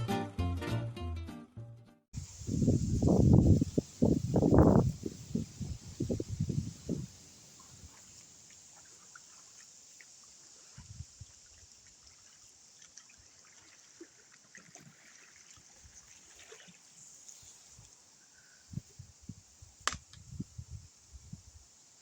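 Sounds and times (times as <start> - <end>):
water dripping from oars: 7.5 - 18.0
sharp click: 19.9 - 20.2.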